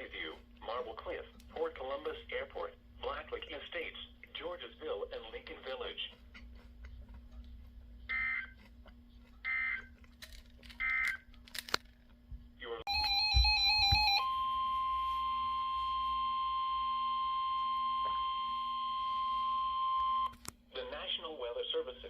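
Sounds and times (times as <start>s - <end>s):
steady warning alarm tone: 8.1s - 8.6s, 12.9s - 20.3s.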